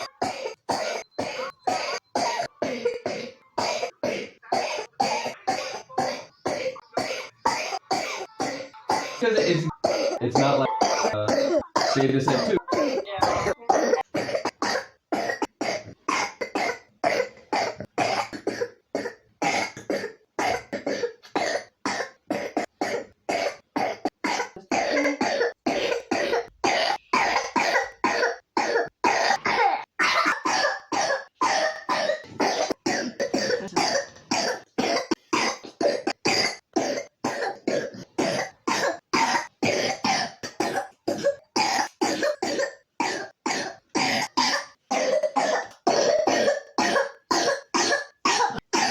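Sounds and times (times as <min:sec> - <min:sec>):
child coughing: 0:00.0 - 0:48.9.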